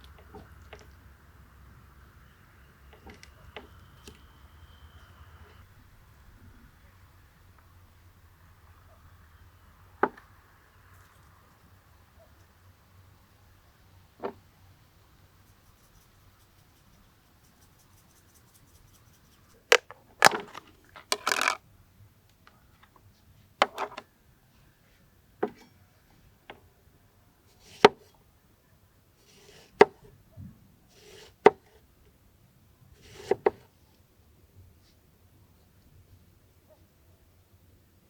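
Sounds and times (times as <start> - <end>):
rustle or scrape: 10.9 - 12.4, 15.3 - 21.6, 27.5 - 28.2, 29.2 - 31.8, 32.9 - 34.0, 34.8 - 35.1.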